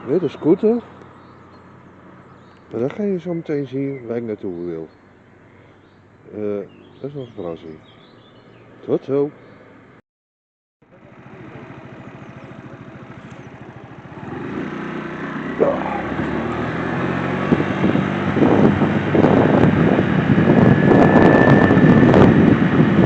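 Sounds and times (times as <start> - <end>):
scooter engine accelerating: 10.9 - 23.0
wind noise on microphone: 17.2 - 23.0.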